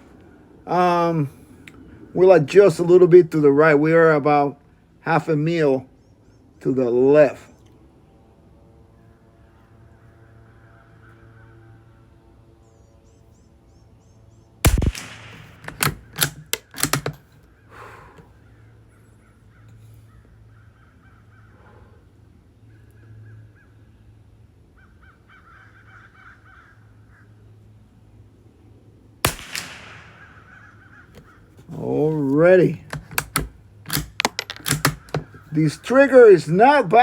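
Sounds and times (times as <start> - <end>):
crows cawing: 10.4 - 11.8, 17.7 - 22.0, 24.8 - 27.3, 30.0 - 31.6
rifle shot: 14.6 - 17.2, 29.2 - 31.0
rifle bolt clicks: 14.7 - 17.4, 29.3 - 31.3, 32.2 - 35.4.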